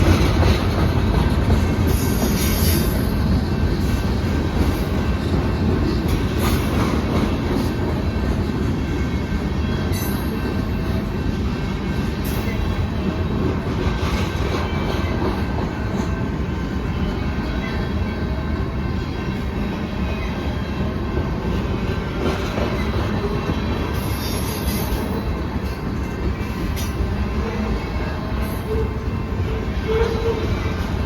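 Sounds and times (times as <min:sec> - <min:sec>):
sharp clacks on rails: 0:00.0 - 0:03.4
freight train rumbling past: 0:00.0 - 0:31.0.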